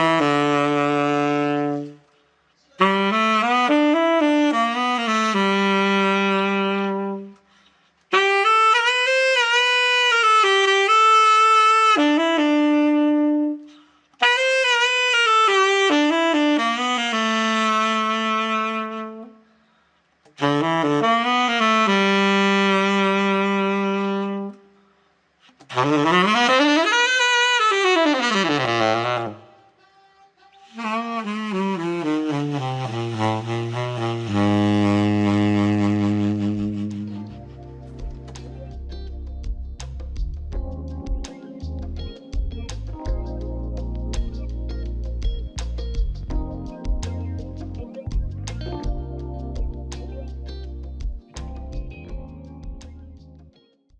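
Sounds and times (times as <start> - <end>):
tenor saxophone playing: 0.0 - 2.2, 2.8 - 19.6, 20.4 - 24.9, 25.5 - 39.0.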